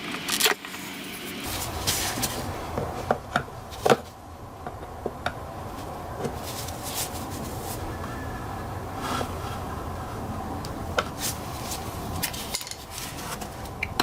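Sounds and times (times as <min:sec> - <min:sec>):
rubbing scrape: 0:09.0 - 0:09.7.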